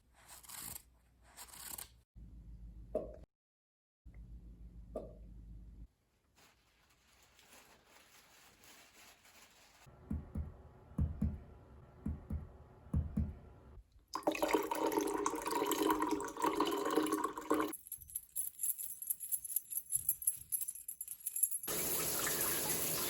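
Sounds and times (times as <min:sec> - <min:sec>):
soft low thumps: 0:10.0 - 0:13.5.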